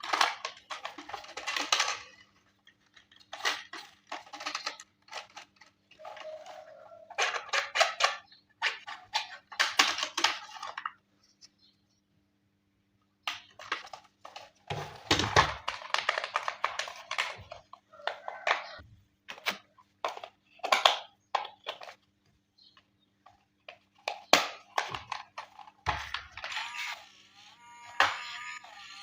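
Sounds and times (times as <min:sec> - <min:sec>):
packaging rustling: 0:00.0 - 0:07.9, 0:13.6 - 0:17.7.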